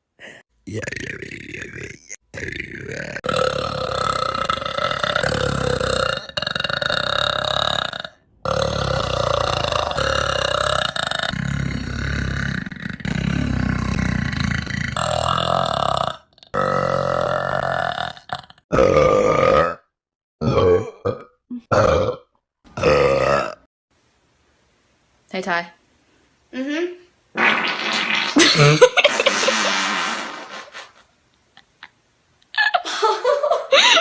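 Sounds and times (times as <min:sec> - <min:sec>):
long burps: 0:00.7 - 0:23.7, 0:27.4 - 0:30.2.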